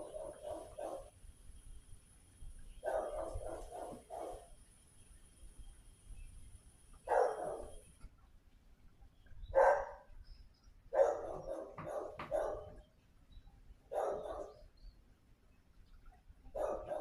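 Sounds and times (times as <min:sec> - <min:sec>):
dog barking: 0:00.0 - 0:01.1, 0:02.8 - 0:04.5, 0:07.1 - 0:07.8, 0:09.5 - 0:10.1, 0:10.9 - 0:12.8, 0:13.9 - 0:14.6, 0:16.5 - 0:17.0.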